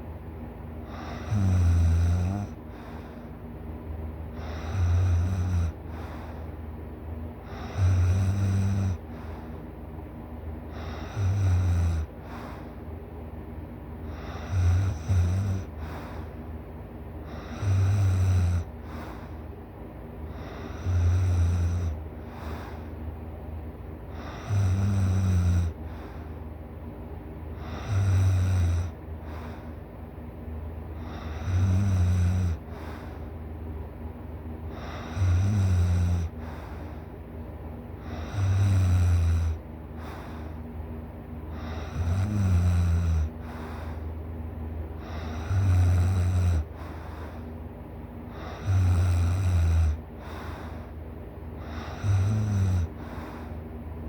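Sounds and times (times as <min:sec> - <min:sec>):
person snoring loudly: 0:00.9 - 0:02.9, 0:04.4 - 0:06.1, 0:07.5 - 0:09.0, 0:10.8 - 0:12.1, 0:14.1 - 0:16.0, 0:17.3 - 0:19.0, 0:20.4 - 0:22.5, 0:24.2 - 0:26.1, 0:27.6 - 0:29.5, 0:31.0 - 0:33.0, 0:34.7 - 0:36.7, 0:38.0 - 0:40.4, 0:41.6 - 0:44.0, 0:45.0 - 0:47.0, 0:48.3 - 0:50.7, 0:51.6 - 0:53.4.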